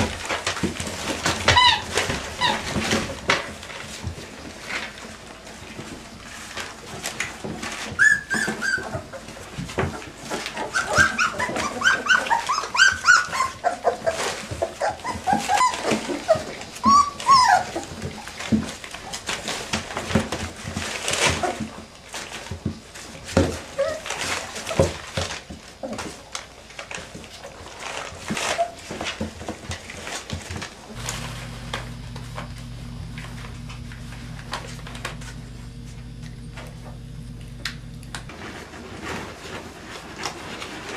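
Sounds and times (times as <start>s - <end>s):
rustling: 0.0s - 40.9s
puppies whimpering and squealing: 1.0s - 3.1s, 7.6s - 19.7s, 23.4s - 26.2s, 27.8s - 29.2s.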